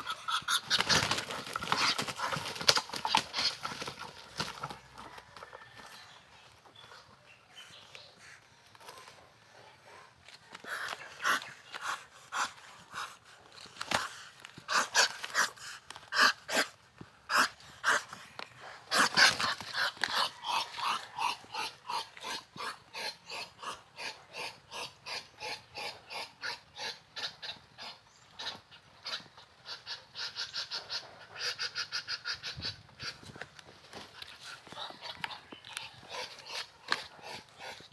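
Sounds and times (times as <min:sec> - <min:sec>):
duck and rooster harsh calls: 0:17.3 - 0:28.5.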